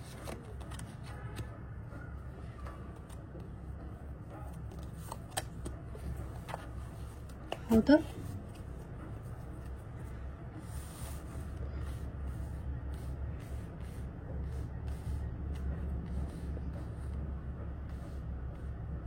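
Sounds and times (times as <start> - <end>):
cards clicking and rustling: 4.7 - 6.8.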